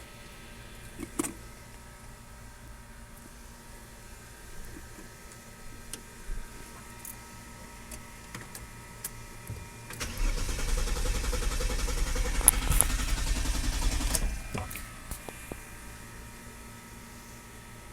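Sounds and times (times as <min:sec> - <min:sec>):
car engine cranking: 0:10.0 - 0:15.6.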